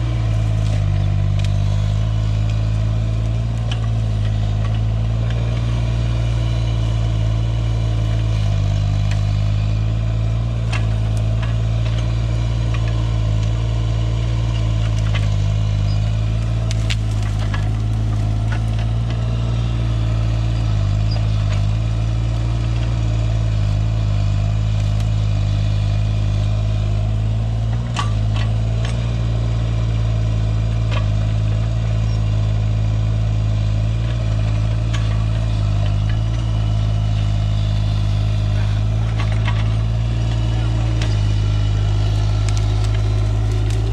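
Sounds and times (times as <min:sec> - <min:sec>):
loader engine running: 0:00.0 - 0:43.9.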